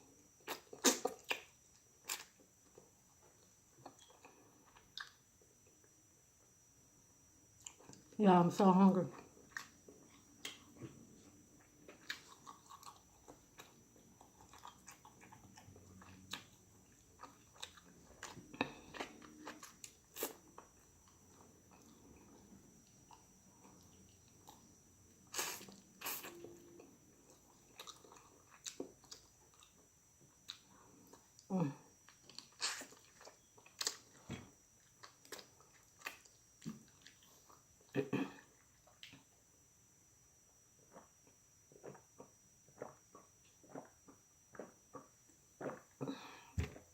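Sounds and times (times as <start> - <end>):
person chewing food: 0.4 - 5.9, 7.6 - 8.2, 9.1 - 39.4, 40.7 - 46.9.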